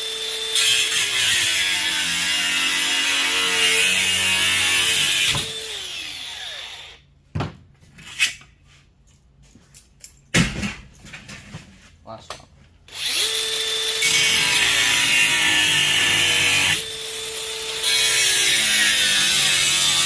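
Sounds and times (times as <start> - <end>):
angle grinder cutting: 0.0 - 7.0, 12.9 - 20.0.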